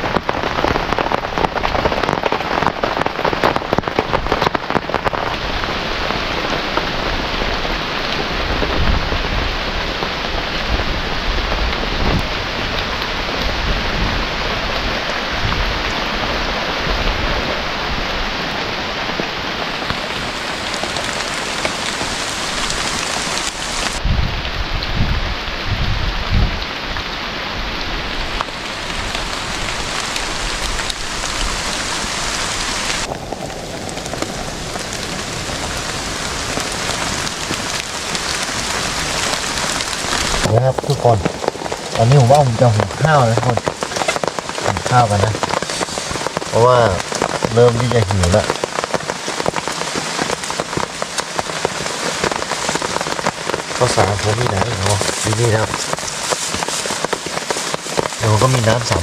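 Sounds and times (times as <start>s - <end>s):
heavy rain on a tarpaulin: 0.0s - 59.0s
low rumbles of thunder: 24.0s - 26.6s.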